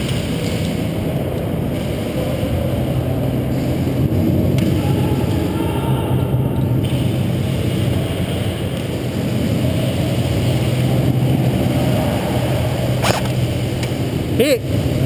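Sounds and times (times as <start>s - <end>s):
low mechanical hum: 0.0s - 15.0s
sharp snap: 13.0s - 14.0s.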